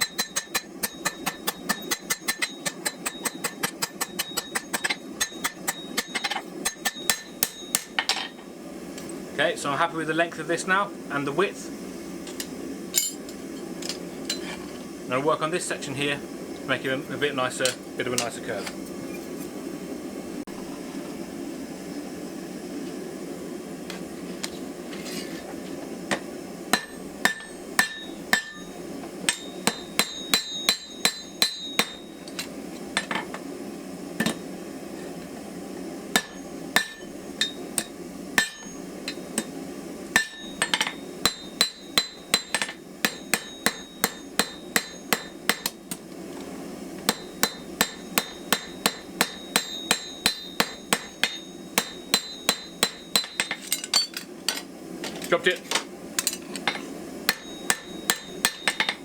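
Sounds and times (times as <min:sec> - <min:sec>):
hammer striking hot steel on anvil: 0:00.0 - 0:09.1, 0:12.2 - 0:14.8, 0:17.6 - 0:19.5, 0:26.1 - 0:33.4, 0:34.2 - 0:34.5, 0:36.1 - 0:46.1, 0:47.0 - 0:59.0.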